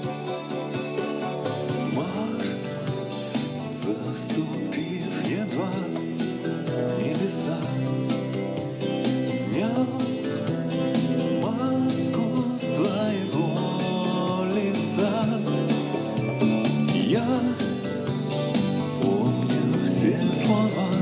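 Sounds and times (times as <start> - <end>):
backing track with steady beat: 0.0 - 21.0
man singing with reverb: 1.8 - 6.2, 6.9 - 8.2, 9.2 - 10.5, 11.3 - 16.1, 16.9 - 18.0, 19.0 - 21.0.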